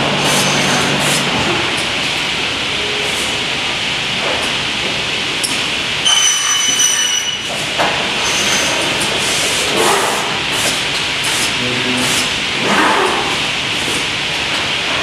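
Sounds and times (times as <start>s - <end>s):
high-pitched whine: 0.0s - 7.6s
machine running: 0.0s - 15.0s.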